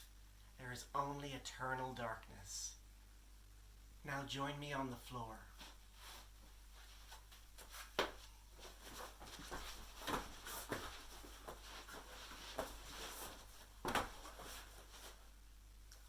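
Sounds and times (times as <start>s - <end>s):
knocks and bumps on floor: 13.8s - 14.6s.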